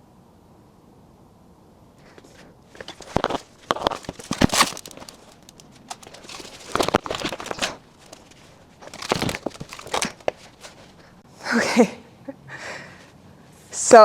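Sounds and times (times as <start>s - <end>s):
packaging crinkling and scraping: 2.0s - 11.2s.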